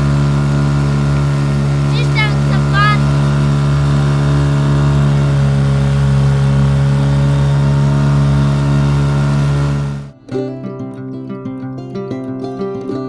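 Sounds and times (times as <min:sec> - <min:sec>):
boat engine droning: 0:00.0 - 0:10.2.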